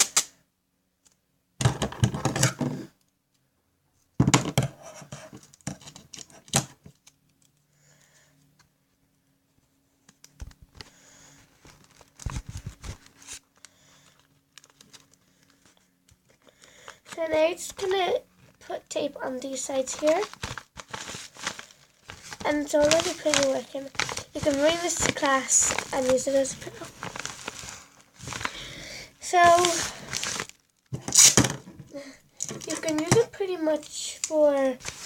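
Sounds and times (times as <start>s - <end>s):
tape crackling and tearing: 0.0s - 0.4s, 11.6s - 15.8s, 19.8s - 31.6s, 32.4s - 33.2s, 33.8s - 35.0s.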